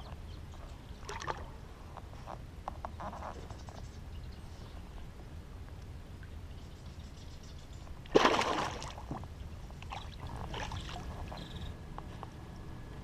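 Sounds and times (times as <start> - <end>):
loud splash on water: 8.1 - 9.0
small splashes and drips: 8.1 - 11.1.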